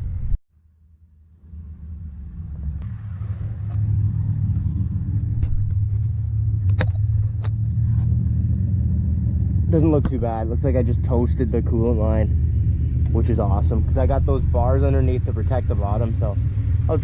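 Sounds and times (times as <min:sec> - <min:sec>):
vehicle engine rumbling: 0:00.0 - 0:17.0
sharp clicks and knocks: 0:05.3 - 0:07.8.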